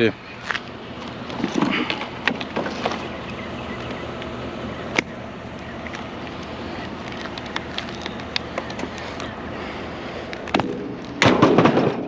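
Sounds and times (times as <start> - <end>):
loud rattling clatter: 10.5 - 12.0.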